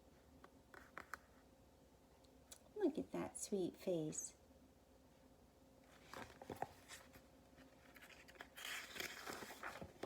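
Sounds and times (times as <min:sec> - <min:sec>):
faint paper rustling: 0:00.2 - 0:01.5, 0:05.8 - 0:10.0
page turning: 0:07.8 - 0:10.0.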